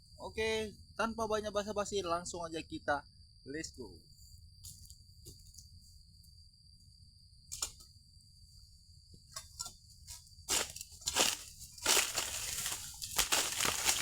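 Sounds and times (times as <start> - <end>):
insects droning: 0.0 - 14.0
loud crackling rustle: 10.5 - 14.0.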